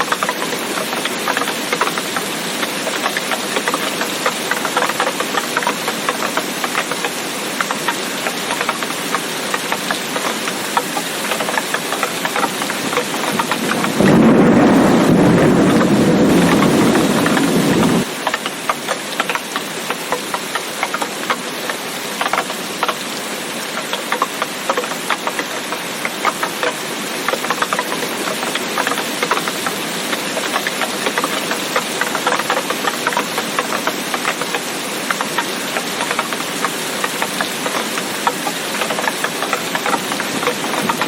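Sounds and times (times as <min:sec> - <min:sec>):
steady rain: 0:00.0 - 0:41.0
thunder rumble: 0:12.8 - 0:18.1.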